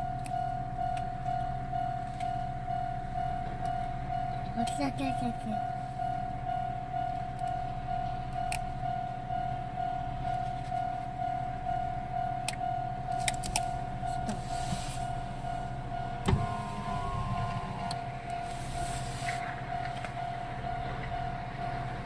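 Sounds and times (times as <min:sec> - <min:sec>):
train rumbling: 0:12.6 - 0:22.0
level crossing bell ringing: 0:15.2 - 0:21.8
sharp thump: 0:16.2 - 0:16.7
falling whine: 0:16.2 - 0:19.9.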